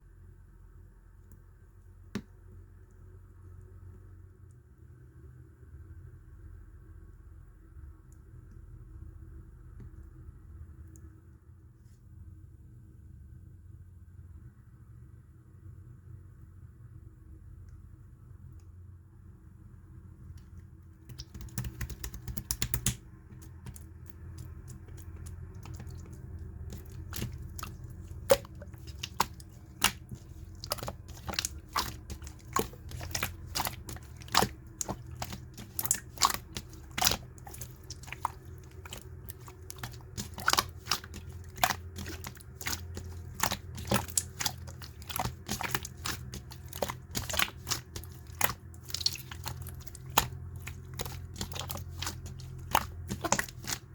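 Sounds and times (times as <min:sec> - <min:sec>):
sticky clicks and pops: 0:21.1 - 0:23.8
slime squeezed by hand: 0:21.1 - 0:53.9.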